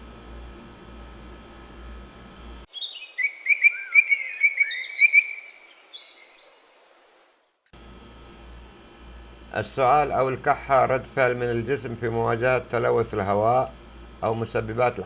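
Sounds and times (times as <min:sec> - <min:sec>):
low room hum: 0:00.0 - 0:02.7, 0:07.8 - 0:15.0
bird chirps and trills: 0:02.7 - 0:06.7.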